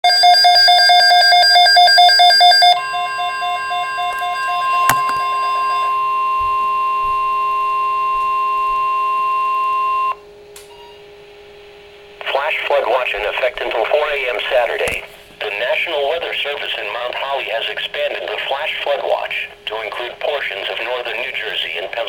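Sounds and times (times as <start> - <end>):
steady alarm tone: 0.0 - 10.2
faint radio hum and hiss: 10.6 - 22.0.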